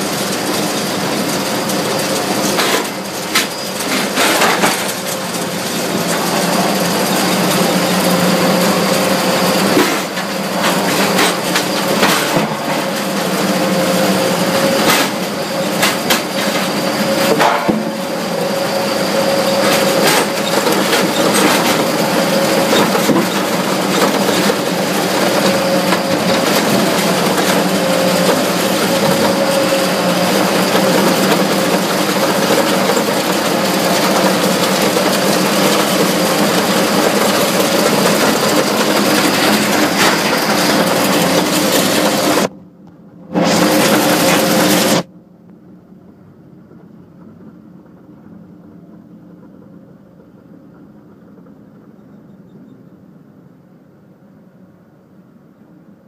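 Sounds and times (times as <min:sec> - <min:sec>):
machine hum: 0:00.0 - 0:53.2
wood scraping and crushing: 0:01.2 - 0:42.5.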